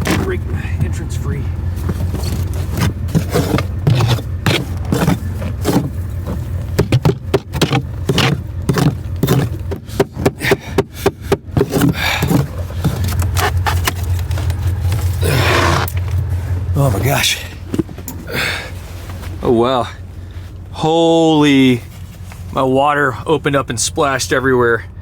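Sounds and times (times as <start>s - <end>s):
diesel engine idling: 0.0s - 25.0s
knocks and scrapes on door: 2.0s - 14.0s.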